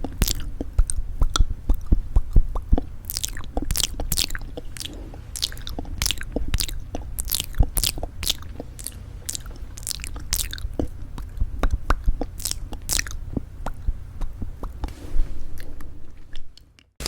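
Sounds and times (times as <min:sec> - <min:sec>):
low steady hum: 0:00.0 - 0:16.8.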